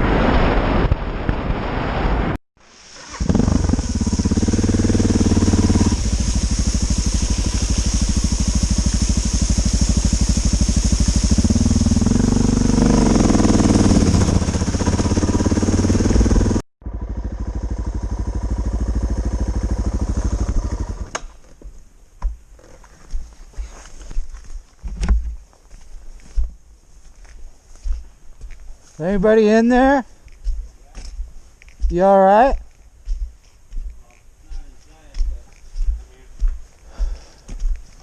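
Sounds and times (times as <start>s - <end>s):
motorcycle engine running: 3.2s - 21.1s.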